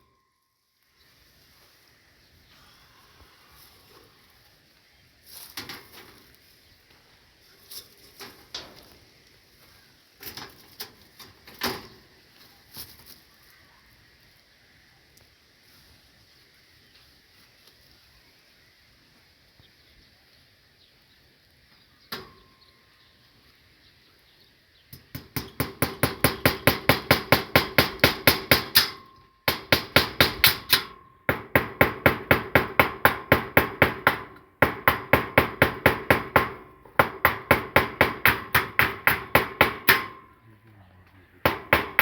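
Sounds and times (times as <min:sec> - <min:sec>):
rapid ringing hammer strikes: 0:25.0 - 0:40.3, 0:41.4 - 0:42.0.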